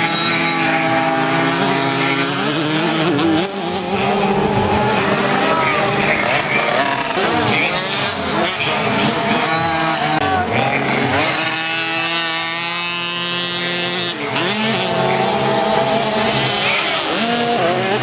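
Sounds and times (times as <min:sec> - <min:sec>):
dirt bike engines revving: 0:00.0 - 0:18.0.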